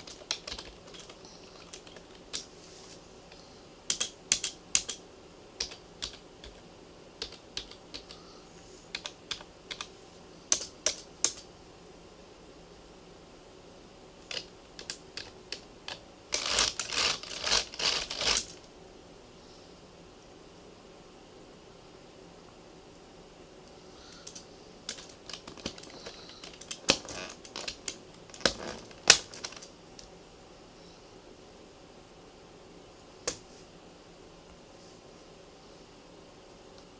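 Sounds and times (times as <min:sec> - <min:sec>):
laptop keyboard typing: 0:00.0 - 0:02.5, 0:03.3 - 0:05.0, 0:05.6 - 0:11.5, 0:14.3 - 0:18.6, 0:24.0 - 0:29.8
keyboard key clicks: 0:03.9 - 0:05.0.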